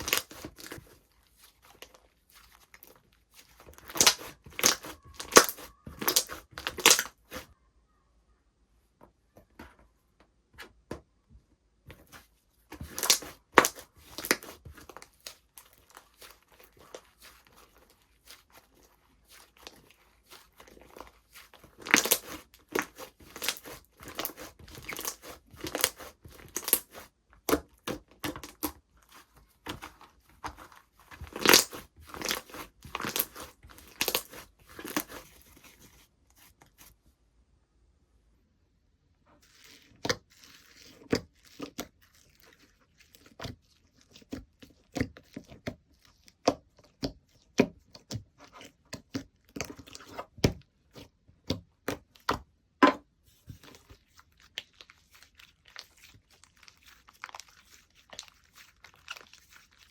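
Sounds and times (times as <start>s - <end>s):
slime crackling: 0.0s - 7.5s, 12.1s - 36.9s, 39.4s - 51.0s, 53.6s - 59.9s
slime clicking and popping: 3.8s - 7.4s, 12.9s - 14.6s, 21.8s - 28.7s, 31.3s - 35.2s.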